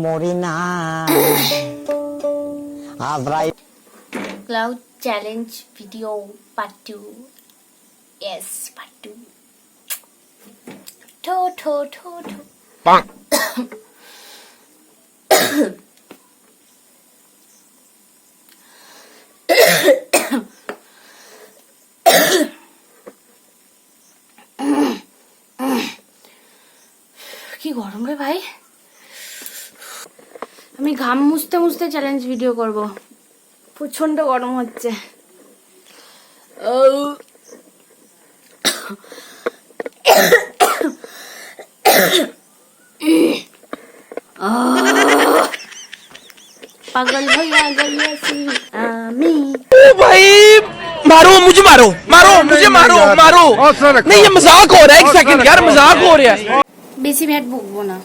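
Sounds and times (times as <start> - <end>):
woman coughing: 1.1 - 1.6, 13.3 - 13.7, 15.3 - 15.8, 19.5 - 20.5, 22.0 - 22.6, 24.6 - 25.0, 38.6 - 39.0, 40.0 - 41.0, 41.8 - 42.4.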